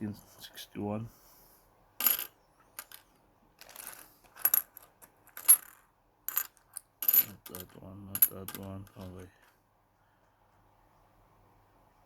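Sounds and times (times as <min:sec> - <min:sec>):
coins clinking together: 0:02.0 - 0:03.0, 0:03.6 - 0:09.2.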